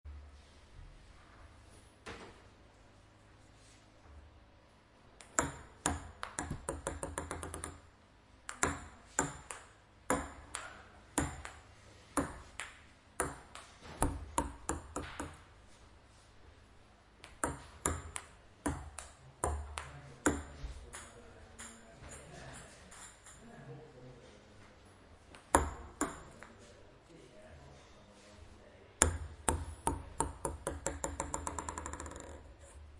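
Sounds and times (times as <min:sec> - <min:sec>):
ping pong ball bouncing: 0:05.2 - 0:15.4, 0:17.2 - 0:21.9, 0:22.5 - 0:23.4, 0:25.3 - 0:26.5, 0:29.0 - 0:32.7.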